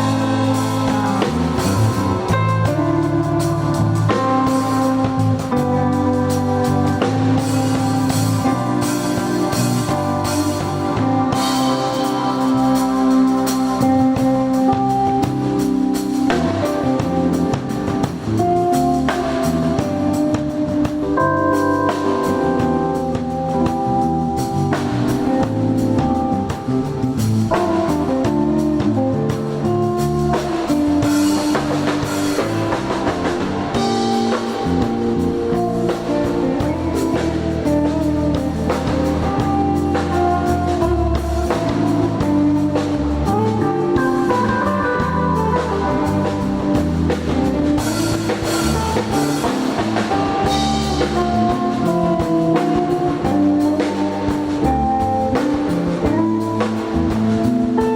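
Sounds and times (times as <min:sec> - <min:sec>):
bass: 0:00.0 - 0:57.9
drum kit: 0:00.0 - 0:57.9
guitar: 0:00.0 - 0:57.9
instrumental band music: 0:00.0 - 0:57.9.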